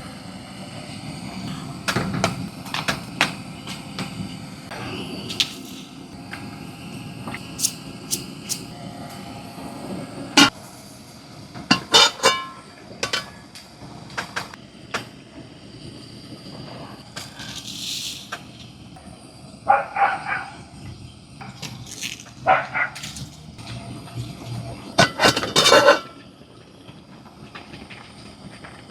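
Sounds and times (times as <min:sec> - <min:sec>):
cookware clinking and knocking: 0:11.7 - 0:13.3, 0:25.0 - 0:26.1
short hiss: 0:17.2 - 0:18.6.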